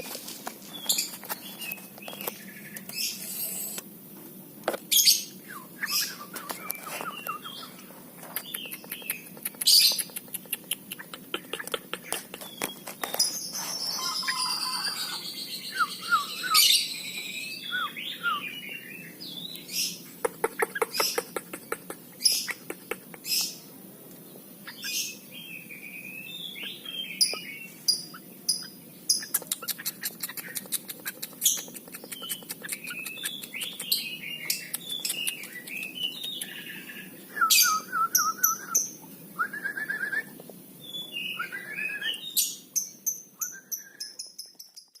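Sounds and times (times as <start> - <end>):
bulbul chirping and whistling: 5.0 - 7.7, 13.6 - 18.6, 26.6 - 40.3, 40.9 - 42.6, 43.4 - 44.5
sharp loud bird calls: 12.4 - 23.6.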